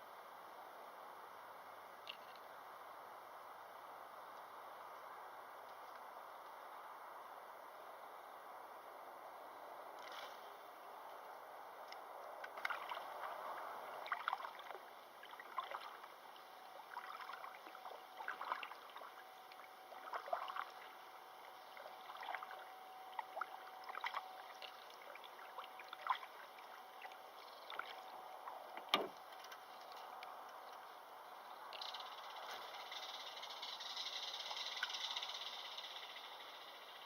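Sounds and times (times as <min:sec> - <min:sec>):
paddle splashing and dripping water: 0:12.4 - 0:30.0.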